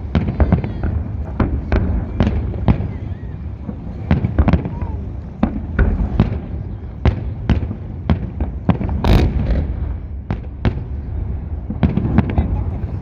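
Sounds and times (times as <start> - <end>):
fireworks bangs: 0.0 - 13.0
fireworks crackle: 0.0 - 13.0
low rumble: 8.6 - 13.0.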